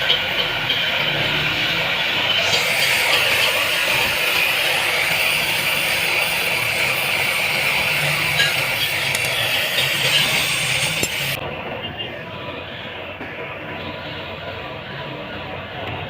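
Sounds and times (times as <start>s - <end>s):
workshop tool hissing: 0.0s - 11.4s.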